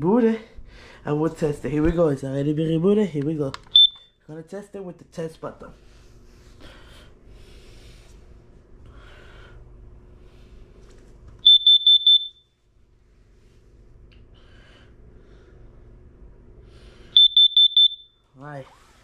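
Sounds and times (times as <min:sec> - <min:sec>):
alarm shrill beeps: 0:03.8 - 0:04.0, 0:11.5 - 0:12.4, 0:17.2 - 0:18.2.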